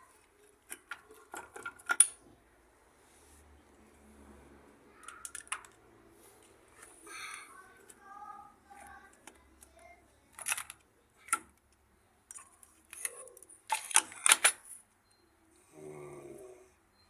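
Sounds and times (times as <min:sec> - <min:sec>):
tools clicking and knocking: 0:00.6 - 0:02.2, 0:05.0 - 0:05.8, 0:10.3 - 0:11.6, 0:12.3 - 0:14.7.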